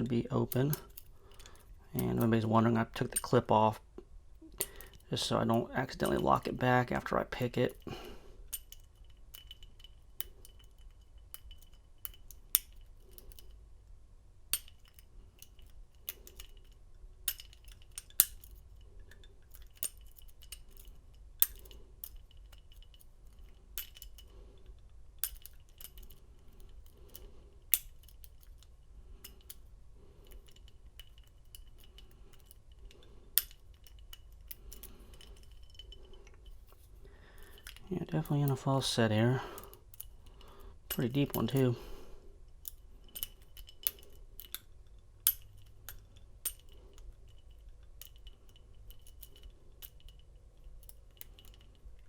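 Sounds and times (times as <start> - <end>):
lock pick clicking in a lock: 8.5 - 13.6, 14.5 - 36.6, 39.6 - 41.8, 42.5 - 52.0.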